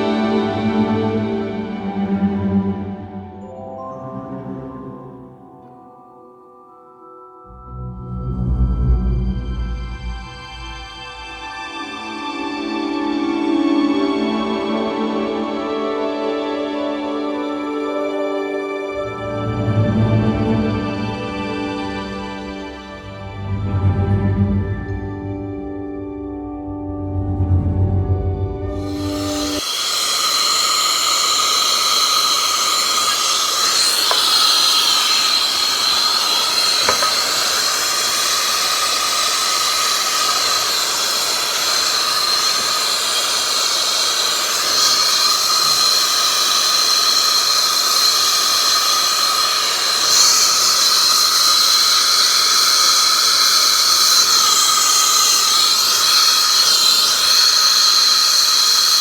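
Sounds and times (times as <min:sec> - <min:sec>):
torch flame hissing and whistling: 0:28.7 - 0:59.0.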